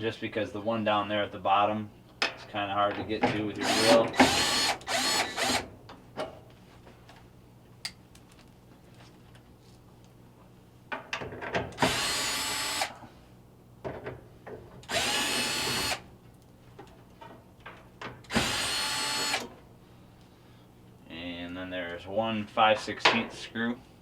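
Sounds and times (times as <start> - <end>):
cordless drill spurts: 3.6 - 5.6, 11.8 - 12.9, 14.9 - 16.0, 18.3 - 19.5
drill bit clicking on screw: 14.9 - 16.0, 18.3 - 19.5.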